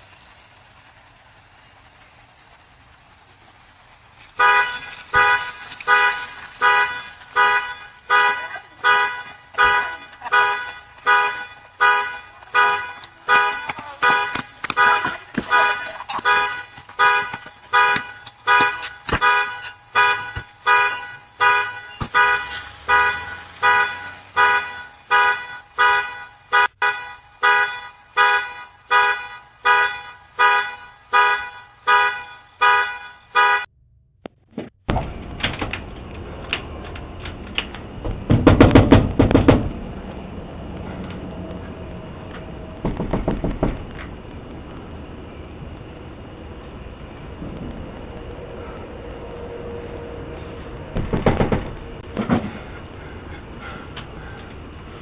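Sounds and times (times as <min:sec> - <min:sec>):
car alarm honking: 0:04.4 - 0:33.7.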